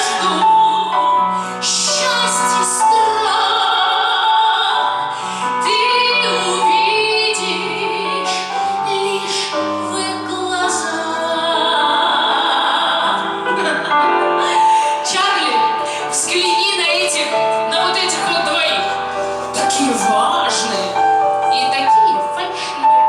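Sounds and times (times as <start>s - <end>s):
woman singing opera: 0.0s - 23.0s
instrumental accompaniment: 5.8s - 23.0s.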